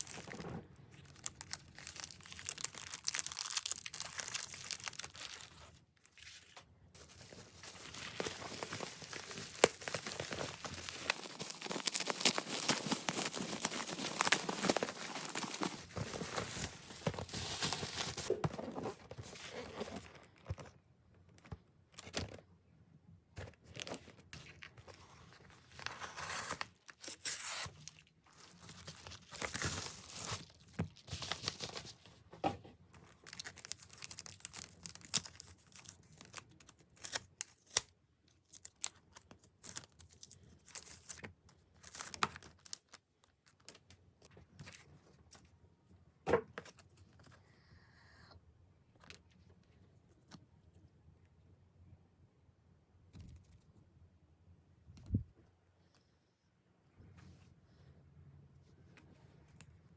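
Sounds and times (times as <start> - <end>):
packaging tearing and crinkling: 1.0 - 6.4, 7.1 - 18.3, 25.8 - 31.9, 33.1 - 37.9.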